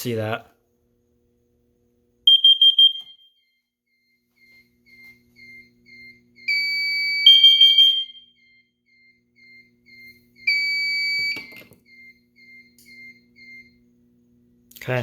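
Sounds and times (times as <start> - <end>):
loud high-pitched alarm tone: 2.3 - 13.8.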